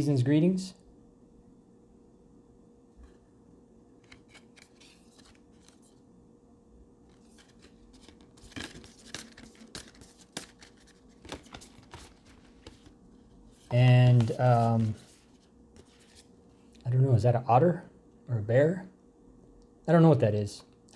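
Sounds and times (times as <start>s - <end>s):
paper rustling: 4.0s - 6.0s, 7.1s - 16.4s
card taps and snaps: 7.4s - 12.9s.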